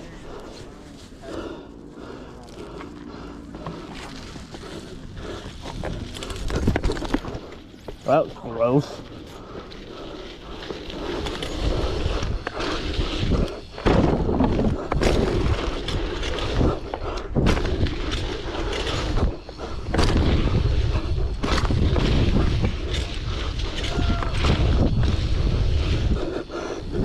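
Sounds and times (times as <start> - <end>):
wind rumbling on microphone: 3.1 - 27.0
bike knocks and landing thuds: 13.8 - 15.4.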